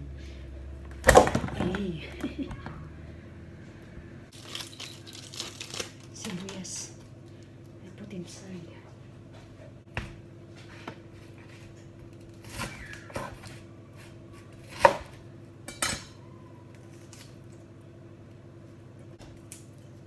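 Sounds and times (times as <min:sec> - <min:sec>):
steady low hum: 0:00.0 - 0:04.4.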